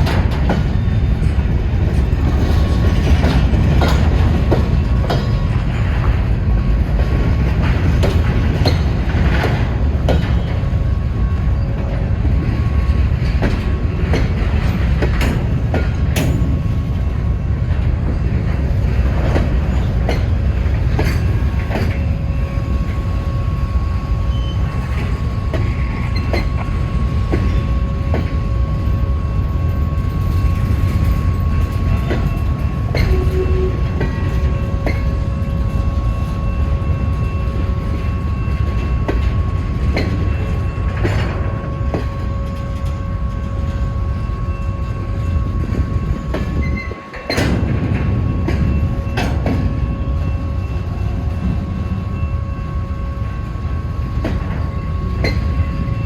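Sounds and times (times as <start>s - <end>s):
wheels clacking over rail joints: 0.0s - 10.7s
freight train rumbling past: 0.0s - 56.0s
wheels squealing on rail: 18.6s - 56.0s.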